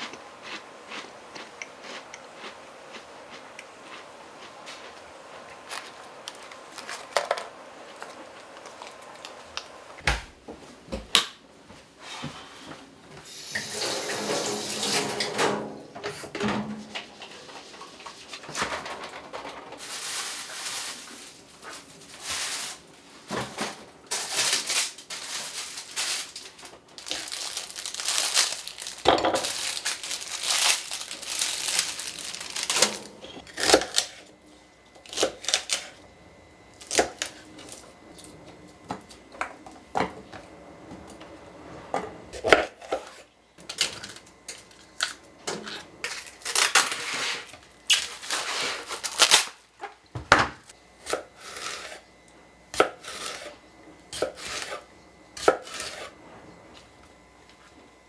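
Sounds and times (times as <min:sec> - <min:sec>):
water running from a tap: 0:13.3 - 0:14.9
dishes and utensils knocking: 0:13.6 - 0:17.4, 0:29.0 - 0:29.6.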